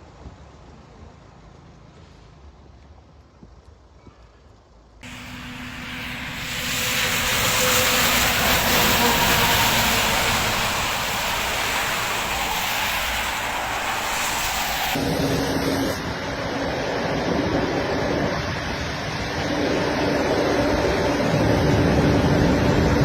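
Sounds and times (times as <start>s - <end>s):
vehicle engines rumbling: 5.0s - 23.0s
wind on microphone: 5.0s - 23.0s.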